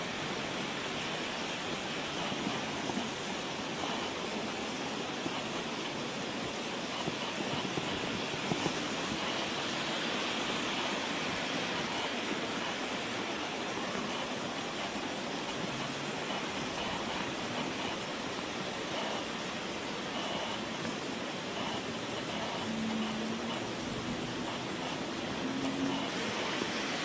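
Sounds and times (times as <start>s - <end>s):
water rushing: 0.0s - 27.0s
faint ticks: 10.3s - 26.4s.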